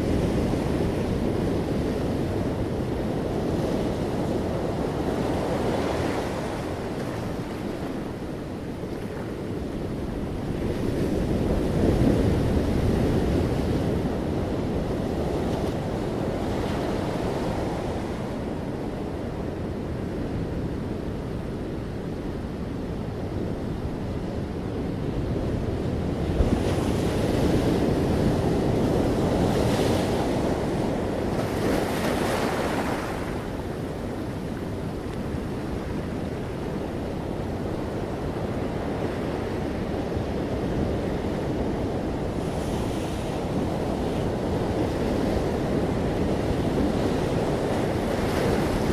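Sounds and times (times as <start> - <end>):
waves breaking on shore: 26.3 - 48.9.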